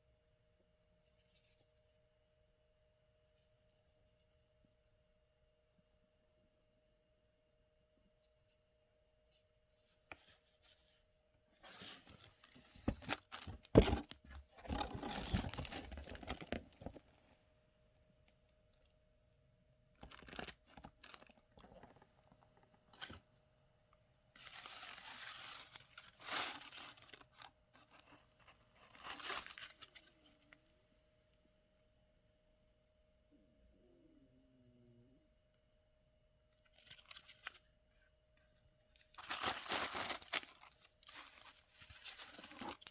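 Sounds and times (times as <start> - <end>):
packaging tearing and crinkling: 13.0 - 16.9, 20.0 - 21.7, 39.1 - 42.9.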